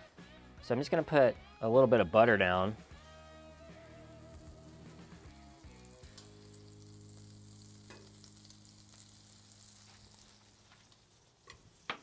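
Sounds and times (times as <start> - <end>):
food sizzling on griddle: 2.5 - 12.0.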